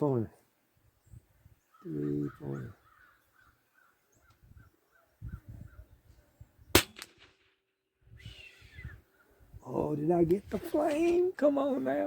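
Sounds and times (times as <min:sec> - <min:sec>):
rifle shot with echo: 0:06.7 - 0:07.7.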